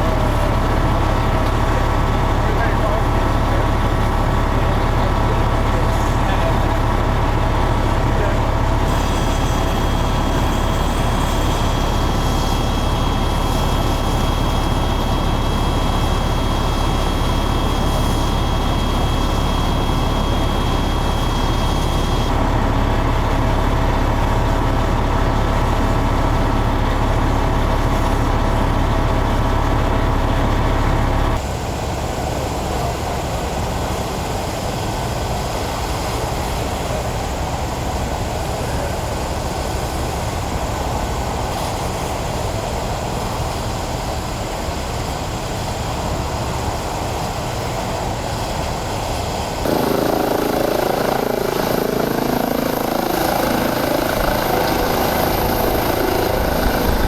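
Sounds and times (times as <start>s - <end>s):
steady whining tones: 0.0s - 25.4s, 49.6s - 57.0s
heavy vehicle engines idling: 0.0s - 31.4s, 49.6s - 57.0s.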